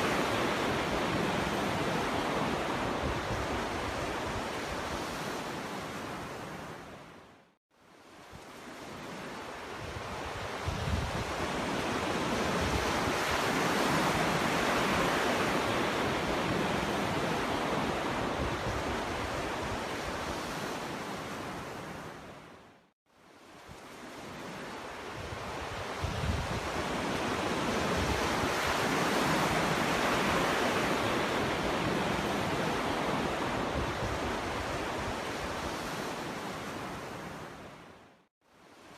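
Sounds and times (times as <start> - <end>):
sea waves washing onto beach: 23.5 - 37.8.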